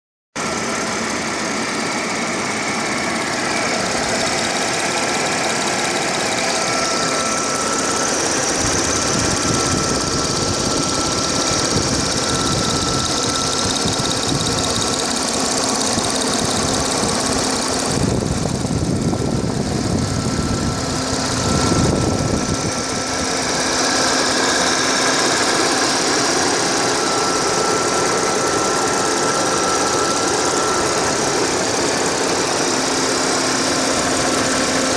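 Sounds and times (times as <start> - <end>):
thin steady high tone: 2.8 - 17.8, 20.4 - 34.9
car engine idling with clicking: 11.1 - 21.5.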